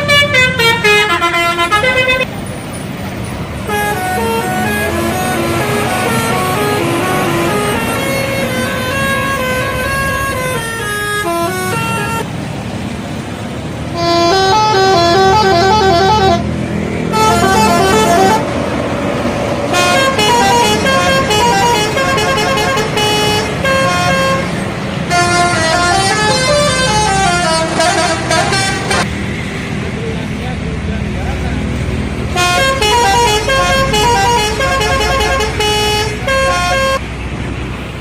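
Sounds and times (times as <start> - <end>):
melodic air horn: 0.0 - 2.3, 3.7 - 12.3, 14.0 - 16.5, 17.1 - 18.5, 19.7 - 29.1, 32.4 - 37.0
bus engine rumbling: 0.0 - 38.0.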